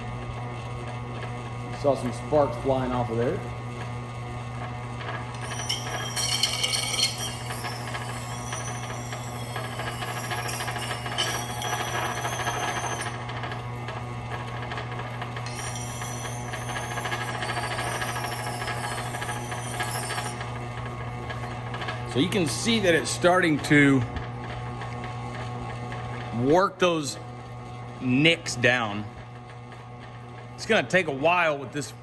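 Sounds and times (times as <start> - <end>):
electric motor humming: 5.3 - 20.7
steel scraping on grindstone: 5.4 - 13.2, 15.4 - 20.5.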